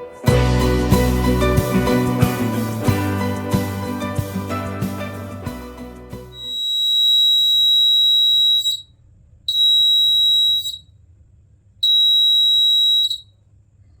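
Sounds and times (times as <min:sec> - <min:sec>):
fire alarm buzzer beeping: 0:06.4 - 0:08.8, 0:09.5 - 0:10.8, 0:11.8 - 0:13.2.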